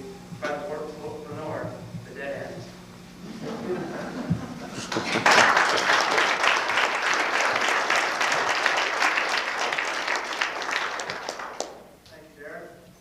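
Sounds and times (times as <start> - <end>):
people applauding: 4.8 - 11.9.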